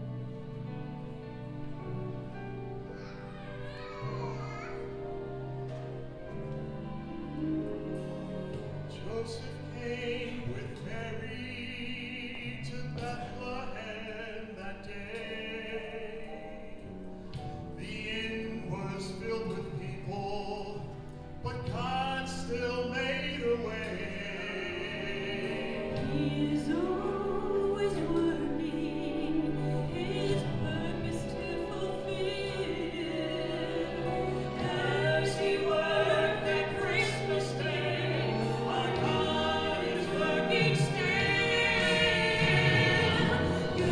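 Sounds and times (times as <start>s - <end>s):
instrumental accompaniment: 15.1s - 43.9s
person singing with vibrato: 21.7s - 43.9s.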